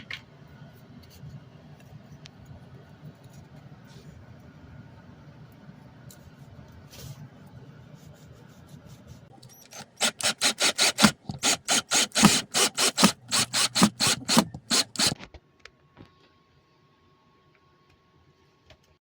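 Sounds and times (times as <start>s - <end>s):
hand tool rasping strokes: 9.6s - 15.2s.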